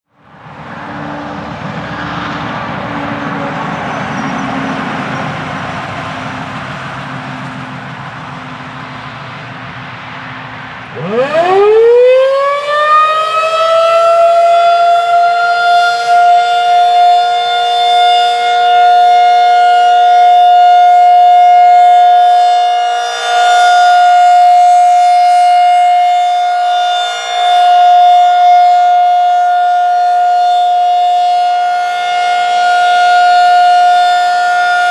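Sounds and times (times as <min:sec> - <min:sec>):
steady rushing noise: 0:00.2 - 0:11.2
tornado siren winding up: 0:10.9 - 0:34.9.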